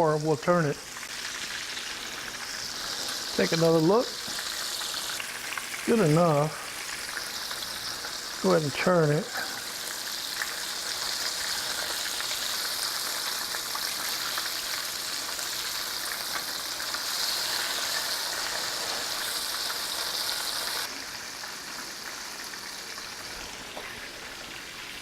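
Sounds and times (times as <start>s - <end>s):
cutlets sizzling in hot oil: 0.0s - 25.0s.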